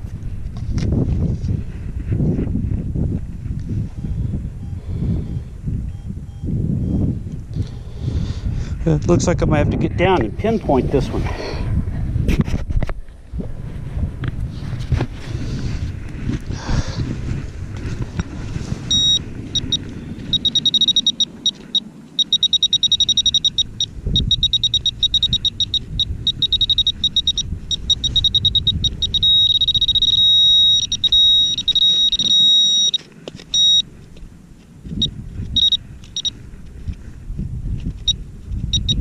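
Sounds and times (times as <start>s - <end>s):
wind: 0.0s - 39.0s
metal detector beeping: 4.0s - 7.2s, 18.8s - 33.9s, 34.9s - 36.4s, 38.0s - 39.0s.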